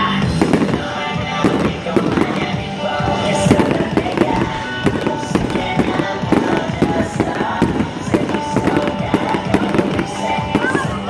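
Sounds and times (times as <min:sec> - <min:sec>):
fireworks bursting: 0:00.0 - 0:11.0
loud pop music: 0:00.0 - 0:11.0.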